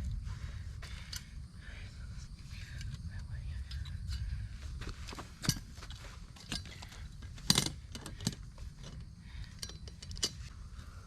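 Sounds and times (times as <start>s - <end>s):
metal cable clinking and rattling: 5.1s - 10.5s.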